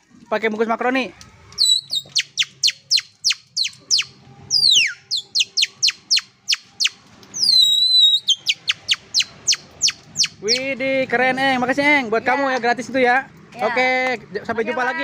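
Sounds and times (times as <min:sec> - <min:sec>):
wrapper squeaking high chirps: 0:01.3 - 0:10.7.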